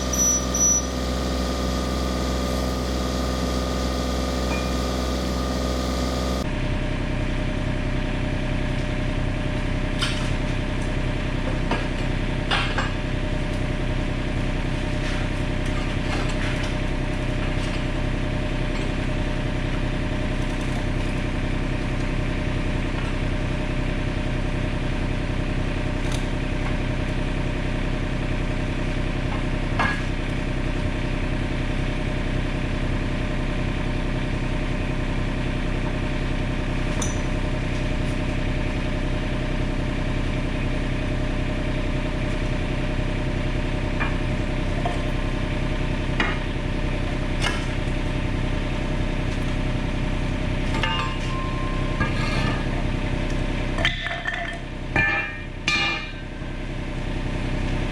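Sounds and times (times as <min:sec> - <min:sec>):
diesel engine running: 0:00.0 - 0:57.9
sharp metal clanks: 0:53.8 - 0:56.3.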